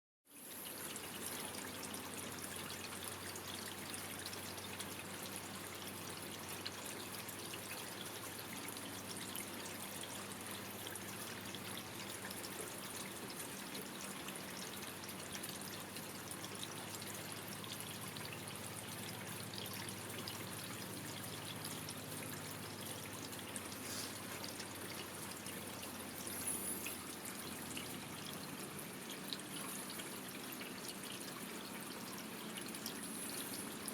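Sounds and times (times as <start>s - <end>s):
water dripping and trickling: 0.3s - 33.9s.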